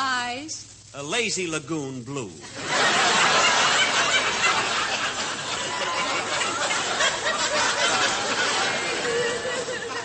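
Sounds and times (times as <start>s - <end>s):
audience laughing: 2.4s - 10.0s.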